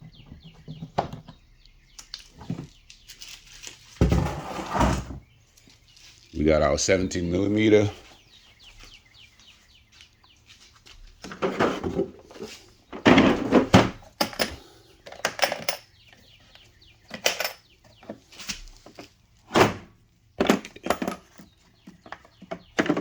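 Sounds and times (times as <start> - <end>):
tools being handled and set down: 2.1 - 5.2, 11.1 - 16.3, 17.0 - 23.0.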